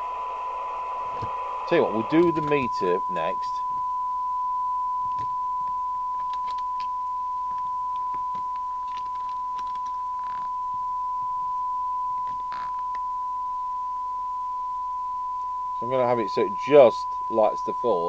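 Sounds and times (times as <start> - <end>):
steady test tone: 0.0 - 18.0.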